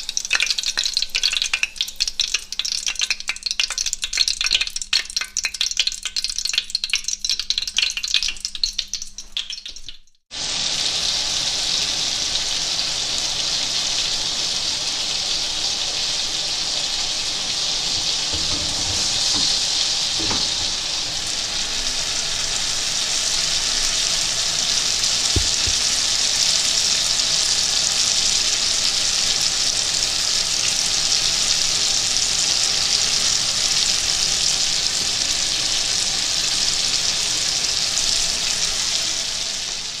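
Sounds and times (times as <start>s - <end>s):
chicken frying in oil: 0.0s - 40.0s
stirring: 17.8s - 21.7s
faint knock: 18.0s - 21.3s, 25.4s - 26.0s.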